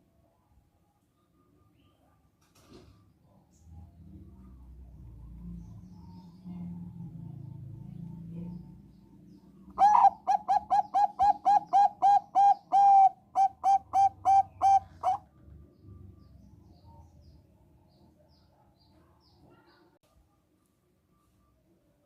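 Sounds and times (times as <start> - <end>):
dove cooing: 9.7 - 15.3.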